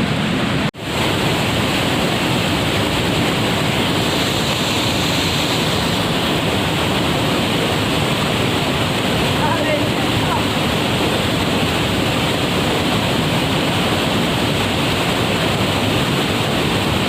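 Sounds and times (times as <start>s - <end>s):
waterfall rushing: 0.0s - 17.0s.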